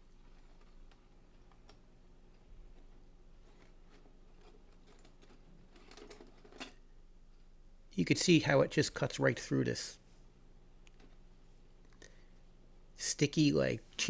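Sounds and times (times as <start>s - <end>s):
metal parts clicking and clinking: 4.4s - 6.8s.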